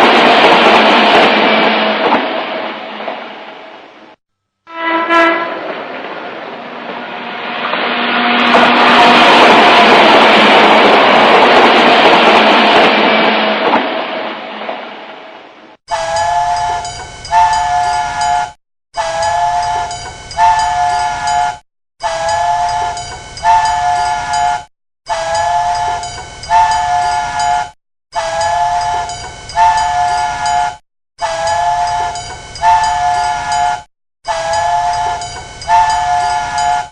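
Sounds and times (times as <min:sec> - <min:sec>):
two-tone train whistle blasts: 0:04.6 - 0:05.6, 0:15.9 - 0:36.9.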